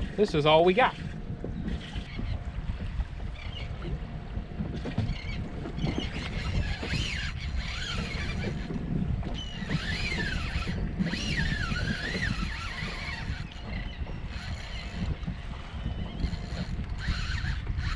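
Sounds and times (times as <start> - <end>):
wind and water rumble: 0.0 - 17.9
birds crying: 4.9 - 8.7, 9.3 - 15.1.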